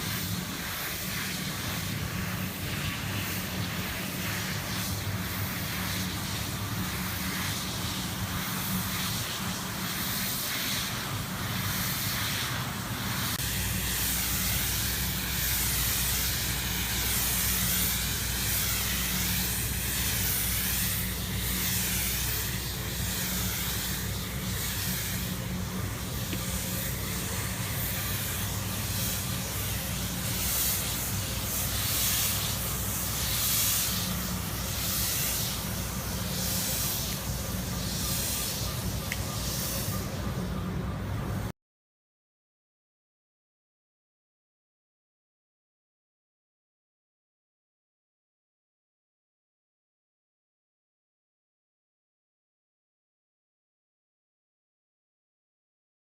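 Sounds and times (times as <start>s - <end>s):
high-pressure spraying hiss: 0.0s - 41.5s.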